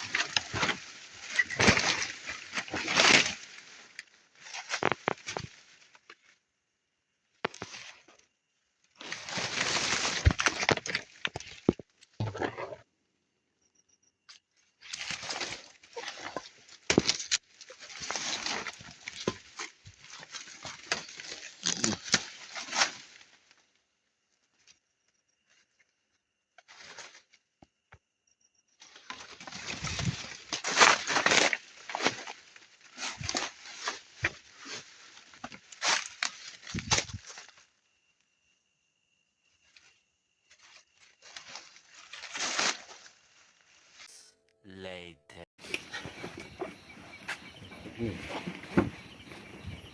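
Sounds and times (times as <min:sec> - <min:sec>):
rustling and crackling with snaps: 0:00.0 - 0:06.4, 0:07.4 - 0:08.3, 0:08.9 - 0:12.8, 0:14.3 - 0:23.8, 0:28.8 - 0:37.8, 0:39.6 - 0:44.1.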